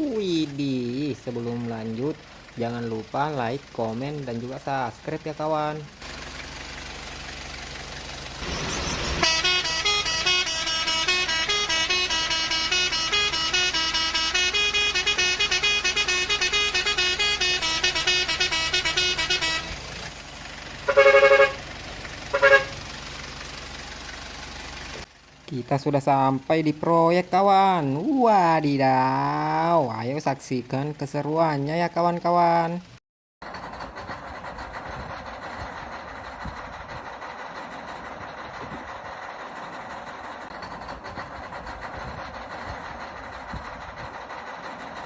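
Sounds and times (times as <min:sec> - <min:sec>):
electronic jingle: 0:08.4 - 0:19.8
toy truck electronic horn honking: 0:08.4 - 0:20.1, 0:20.8 - 0:21.7, 0:22.3 - 0:22.8.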